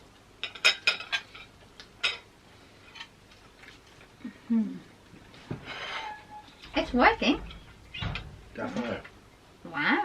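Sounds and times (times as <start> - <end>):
cutlery clinking on plates: 0.4 - 2.3.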